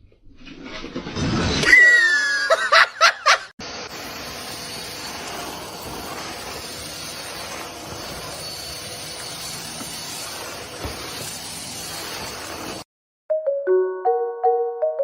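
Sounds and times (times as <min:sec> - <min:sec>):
steady hissing: 0:03.6 - 0:12.9.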